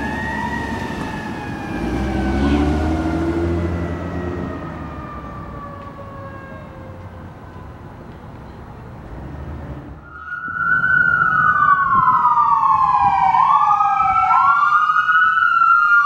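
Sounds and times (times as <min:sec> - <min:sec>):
emergency siren wailing: 0:00.0 - 0:08.0, 0:10.0 - 0:16.0
heavy vehicle engine rumble: 0:00.0 - 0:10.1.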